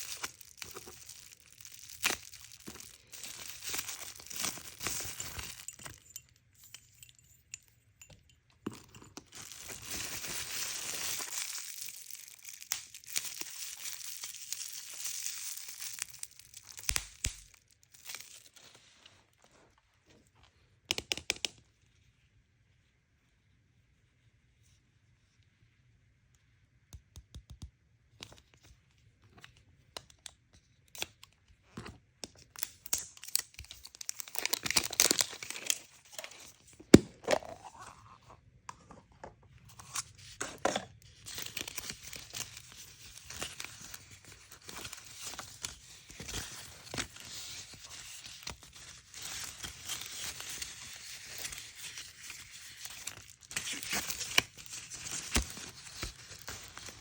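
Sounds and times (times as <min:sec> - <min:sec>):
packaging tearing: 0:00.0 - 0:05.7, 0:09.4 - 0:18.5, 0:32.6 - 0:36.6, 0:41.2 - 0:57.0
packaging snapping: 0:00.0 - 0:06.0
toy packaging clicks: 0:00.0 - 0:06.1, 0:09.3 - 0:18.4, 0:32.4 - 0:36.4
wrapper crinkling: 0:00.0 - 0:06.3, 0:09.2 - 0:19.0, 0:32.6 - 0:37.9, 0:39.8 - 0:57.0.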